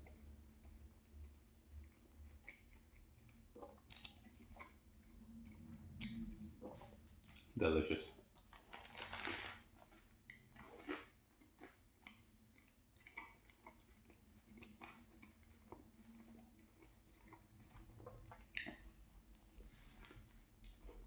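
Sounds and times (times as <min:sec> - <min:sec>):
close-up chewing: 0:00.0 - 0:07.6, 0:08.2 - 0:21.0
mouth smacks and clicks: 0:05.5 - 0:07.5, 0:18.1 - 0:18.9.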